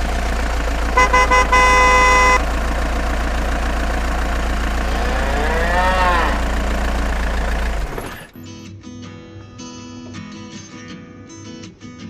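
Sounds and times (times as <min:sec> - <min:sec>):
low engine drone: 0:00.0 - 0:08.3
horn tooting: 0:00.8 - 0:02.5.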